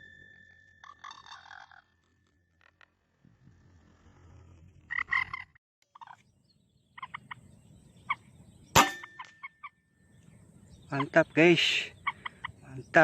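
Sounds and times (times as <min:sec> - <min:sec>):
moorhens croaking: 0:00.8 - 0:02.0, 0:04.9 - 0:13.0.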